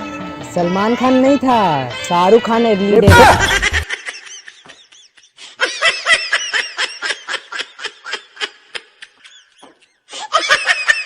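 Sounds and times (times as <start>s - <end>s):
high-pitched giggling: 3.1s - 5.2s.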